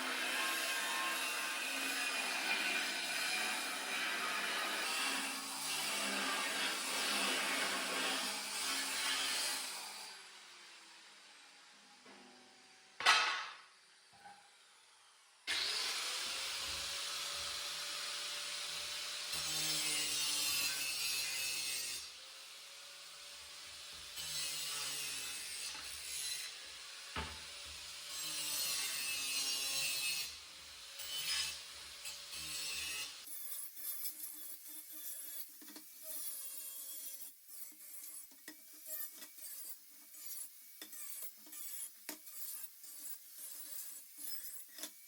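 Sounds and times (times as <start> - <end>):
angle grinder grinding steel: 0.0 - 10.3, 24.2 - 45.0.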